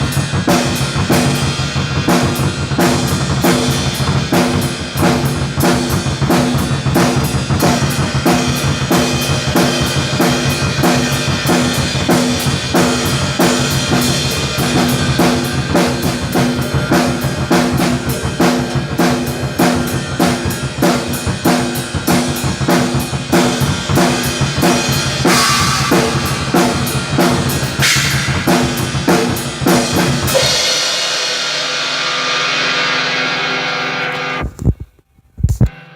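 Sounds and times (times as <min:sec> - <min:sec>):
drum kit fast beat: 0:00.0 - 0:33.3
pitched music: 0:24.6 - 0:31.0
ringing cymbal tail: 0:24.8 - 0:34.4.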